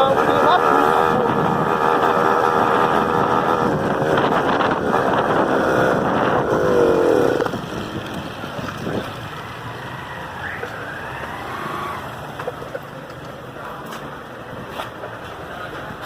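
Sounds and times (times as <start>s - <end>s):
wind on microphone: 0.0s - 9.4s
motorcycle engine running: 0.0s - 13.2s.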